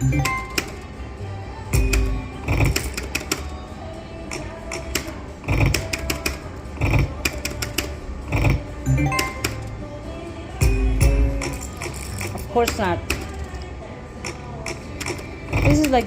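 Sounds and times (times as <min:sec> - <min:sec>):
slot machine game music: 0:00.0 - 0:01.1, 0:01.7 - 0:03.3, 0:08.3 - 0:09.8, 0:10.6 - 0:13.1.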